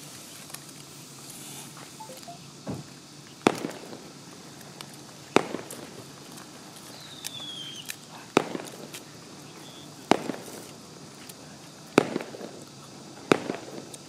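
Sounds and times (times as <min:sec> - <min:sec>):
low background noise: 0:00.0 - 0:14.0
firework cracks: 0:03.4 - 0:14.0.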